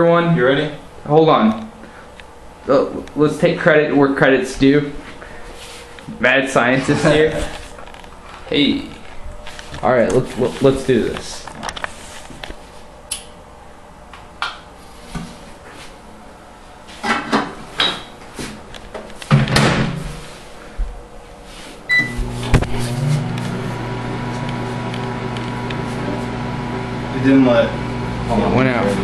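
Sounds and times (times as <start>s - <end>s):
microwave keypad beep: 21.9s - 22.2s
microwave humming with fan: 21.9s - 29.0s.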